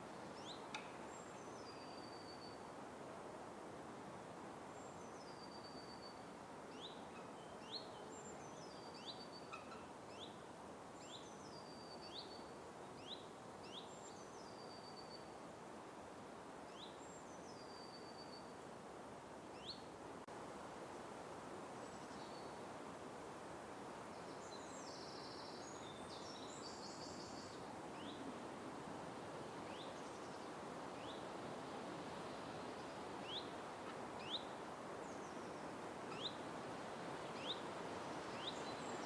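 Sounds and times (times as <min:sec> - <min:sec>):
steady soft hiss: 0:00.0 - 0:39.0.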